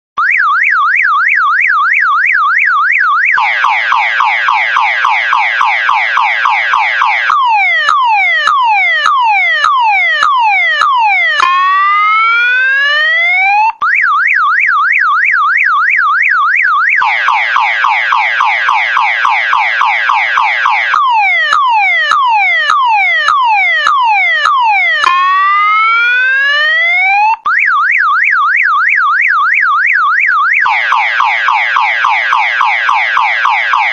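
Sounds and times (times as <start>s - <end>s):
car alarm siren cycling tones: 0.2s - 33.9s.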